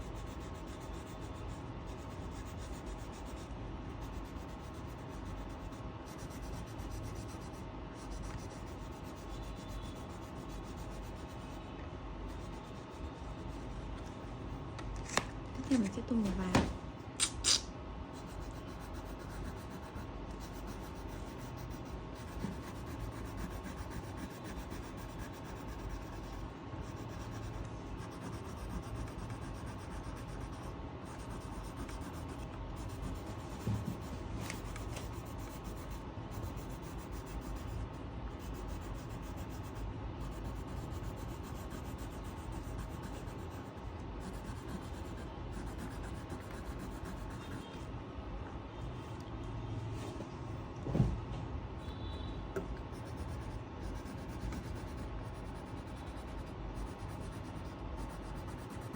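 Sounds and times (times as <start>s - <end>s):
colouring tool rubbing on paper: 18.2s - 47.8s.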